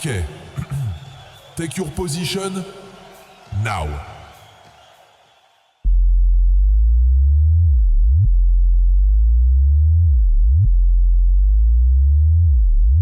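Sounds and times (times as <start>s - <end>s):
deep synthesized bass tone: 5.9s - 13.0s.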